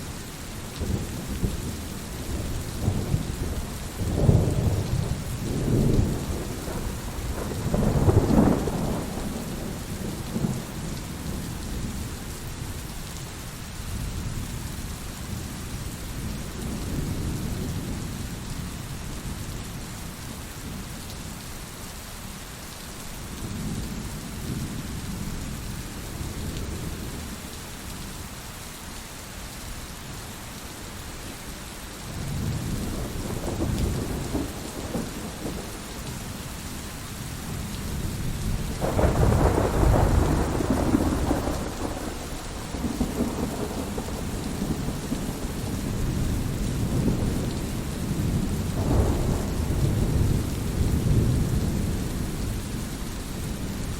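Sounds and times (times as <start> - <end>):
steady rain: 0.0 - 53.9
thunder rumbling: 0.8 - 12.0, 32.1 - 36.4, 37.3 - 53.9.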